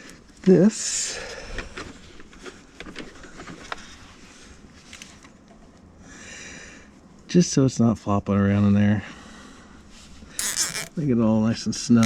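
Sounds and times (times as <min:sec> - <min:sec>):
wiring and plastic trim rustling: 0:10.4 - 0:11.0
zip tie ratcheting: 0:10.4 - 0:11.0.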